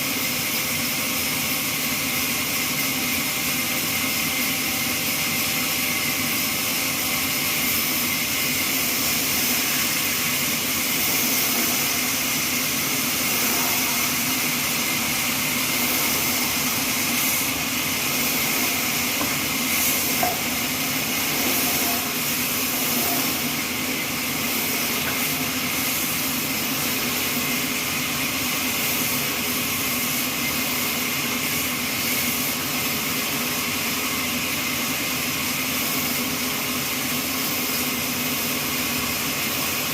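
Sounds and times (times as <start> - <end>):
band saw cutting wood: 6.4 - 28.1.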